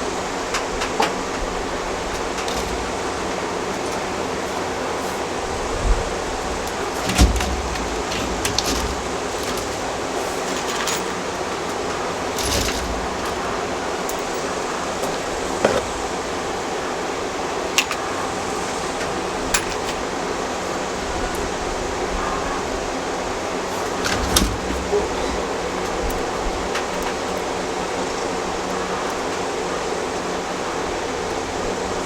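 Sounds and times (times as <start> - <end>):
wire mesh clinking: 0.0 - 16.2.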